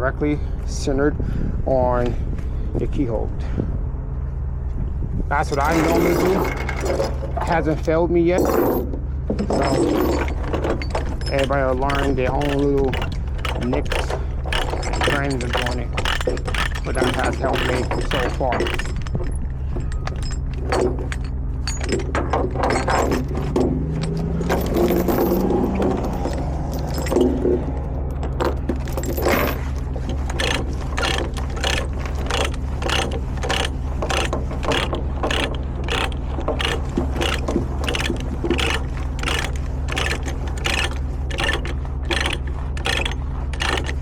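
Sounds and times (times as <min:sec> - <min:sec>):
engine idling: 0:00.0 - 0:44.0
chain clanking and scraping: 0:05.3 - 0:44.0
ratchet binder clicking: 0:10.0 - 0:22.1, 0:28.6 - 0:44.0.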